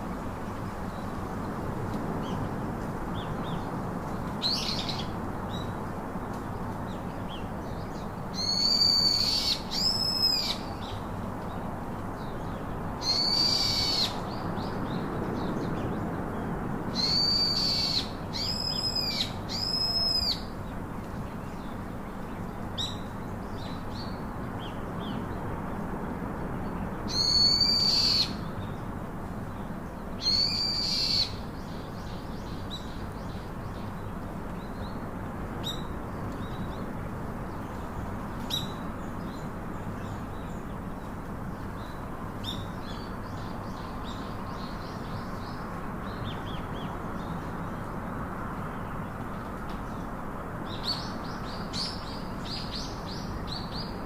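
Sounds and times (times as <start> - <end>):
low background hiss: 0.0 - 54.0
bird high-pitched calls: 8.4 - 10.7, 13.0 - 14.2, 17.0 - 20.5, 27.1 - 28.4, 30.2 - 31.4.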